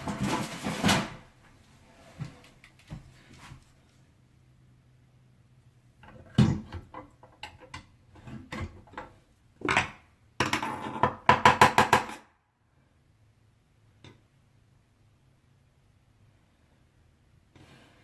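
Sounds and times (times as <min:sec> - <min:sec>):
tools knocking and clicking: 0:06.0 - 0:12.3.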